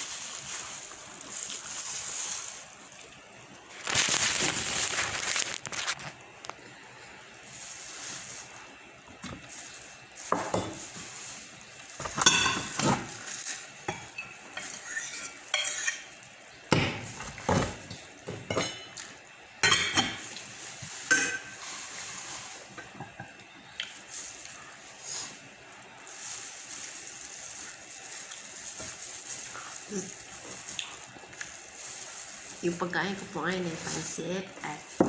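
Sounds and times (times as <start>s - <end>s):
cutlery clinking and scraping dish: 13.9s - 16.1s.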